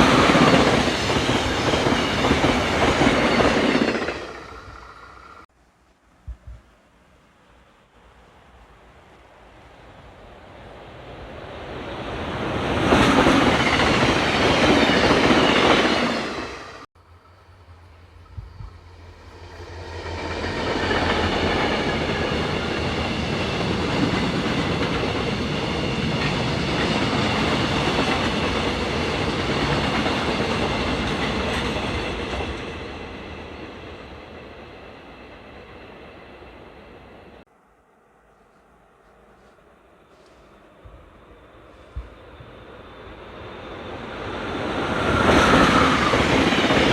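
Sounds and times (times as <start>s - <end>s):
train passing on rails: 0.0s - 5.5s, 6.8s - 46.9s
high ringing rail tones: 10.6s - 46.9s.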